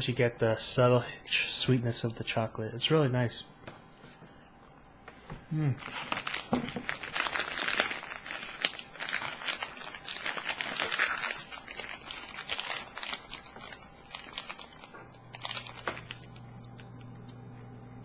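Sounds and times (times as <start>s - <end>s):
candy wrapper crinkling: 5.8s - 17.4s.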